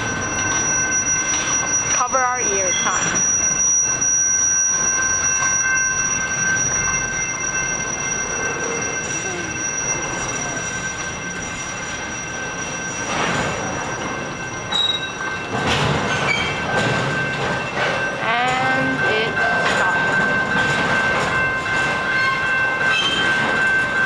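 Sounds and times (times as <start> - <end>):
high-pitched wheel squeal: 0.0 - 15.3
train rumble: 0.0 - 24.0.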